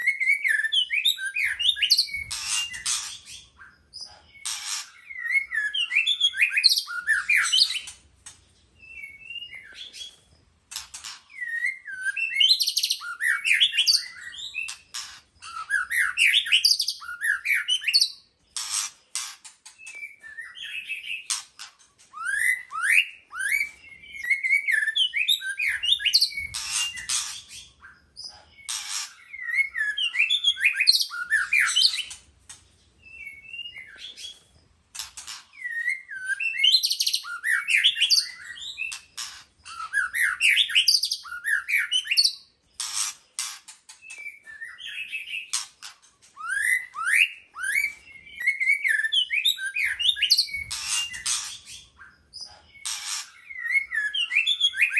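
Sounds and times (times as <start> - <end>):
bird singing whistled notes: 0.0 - 7.9, 8.8 - 10.2, 11.3 - 18.3, 19.7 - 21.4, 22.1 - 32.2, 33.0 - 34.5, 35.5 - 39.0, 39.6 - 42.5, 44.0 - 45.6, 46.3 - 54.9.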